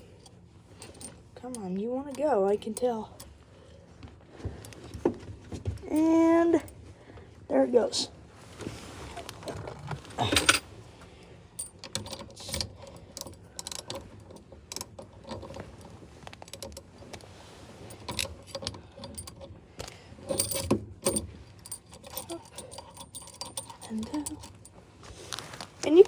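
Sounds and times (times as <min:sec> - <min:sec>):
metallic clicks and rattles of bolt: 0:10.2 - 0:10.7, 0:11.6 - 0:16.9, 0:17.9 - 0:24.8.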